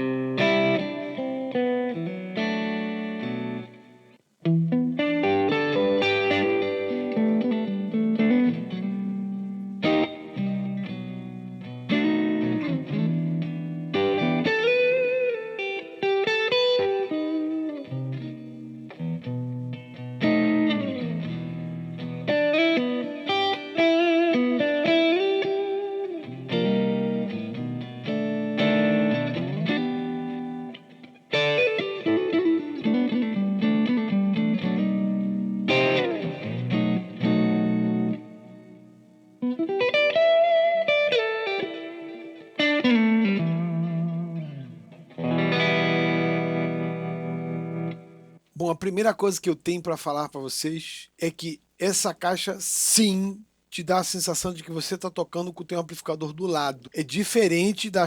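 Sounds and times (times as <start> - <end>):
electric guitar playing: 0.0 - 48.4.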